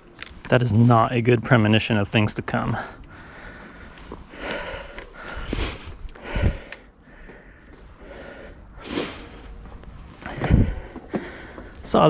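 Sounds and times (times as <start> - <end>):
person breathing hard: 2.8 - 11.8.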